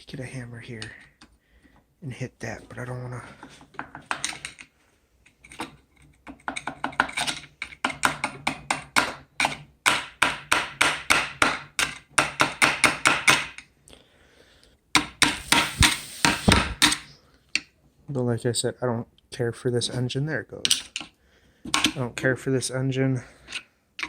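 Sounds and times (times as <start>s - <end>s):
hand tools clicking and tapping: 5.4s - 13.6s.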